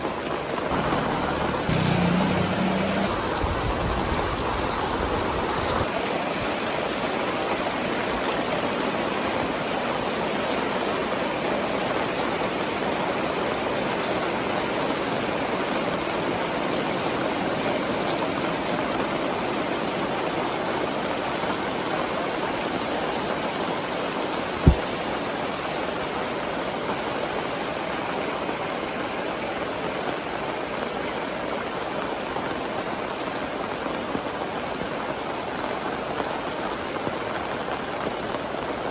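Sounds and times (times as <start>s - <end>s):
heavy rain pouring: 0.0s - 38.9s
short low thump: 24.6s - 24.9s.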